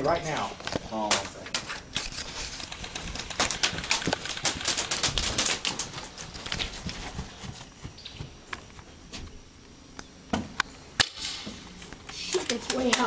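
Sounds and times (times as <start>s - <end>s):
airsoft guns firing: 3.2s - 5.9s.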